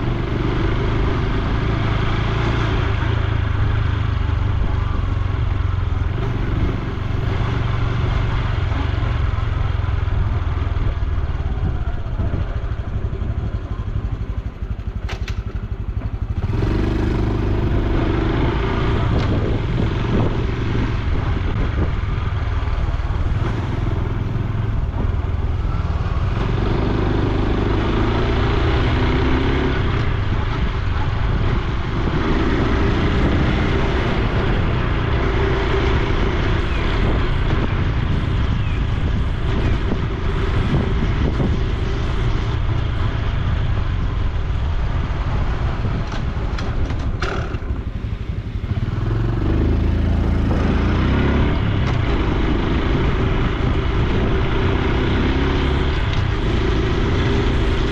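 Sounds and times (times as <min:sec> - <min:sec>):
motorcycle engine running: 0:00.0 - 0:57.9.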